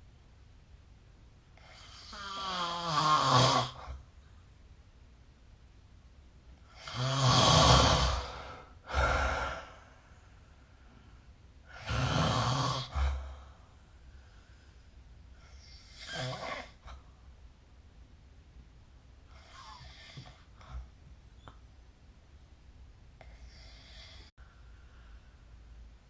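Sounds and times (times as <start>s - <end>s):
person snoring: 1.6s - 4.0s, 6.7s - 10.0s, 11.7s - 13.5s, 15.4s - 16.9s, 23.2s - 24.3s.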